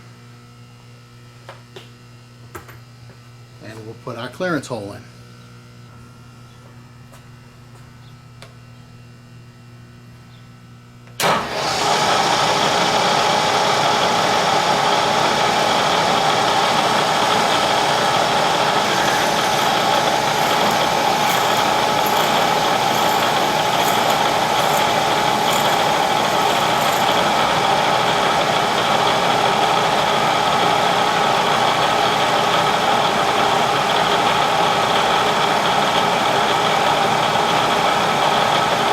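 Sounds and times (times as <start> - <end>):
milling machine spindle running: 11.6 - 38.9.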